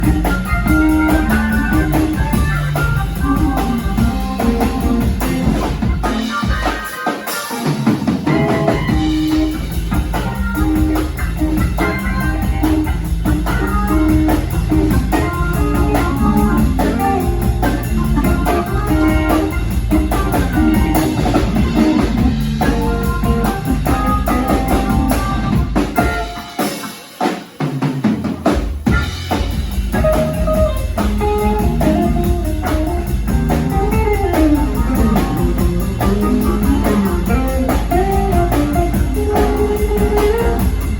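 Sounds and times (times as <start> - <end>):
band with drums guitar and bass: 0.0 - 40.9.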